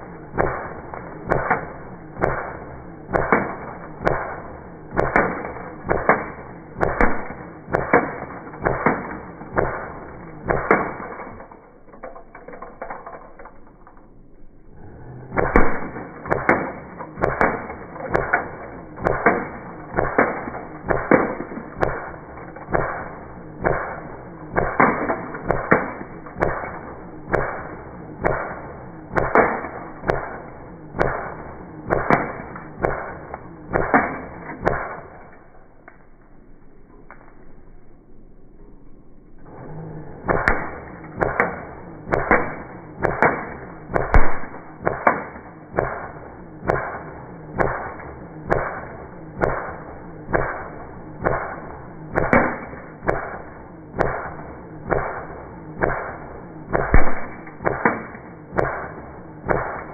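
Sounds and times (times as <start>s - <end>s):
airsoft gun shots: 0.0s - 13.5s, 15.0s - 35.5s, 39.7s - 59.9s.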